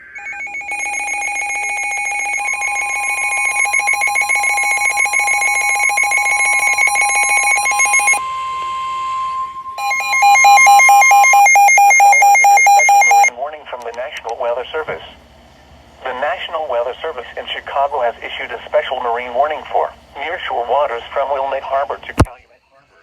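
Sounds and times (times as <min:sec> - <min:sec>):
fast-pulsing electronic beeps: 0:00.0 - 0:08.2, 0:09.8 - 0:13.3
alternating two-tone beeping: 0:00.0 - 0:13.3
steady warning alarm tone: 0:00.0 - 0:13.3.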